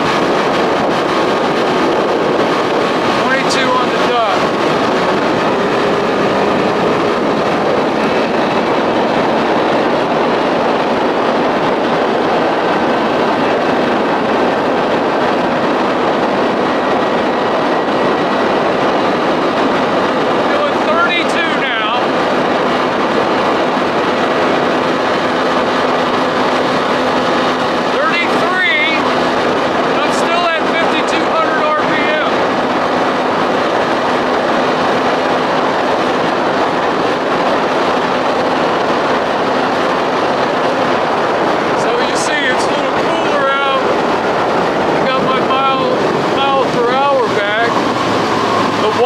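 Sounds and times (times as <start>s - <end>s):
outboard motor running: 0.0s - 49.0s
rush of wind and water: 0.0s - 49.0s.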